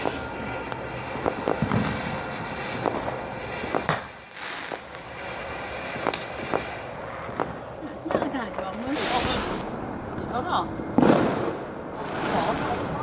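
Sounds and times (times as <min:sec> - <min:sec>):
background hiss: 0:00.0 - 0:10.1
fireworks popping and banging: 0:00.0 - 0:10.4, 0:11.0 - 0:13.0.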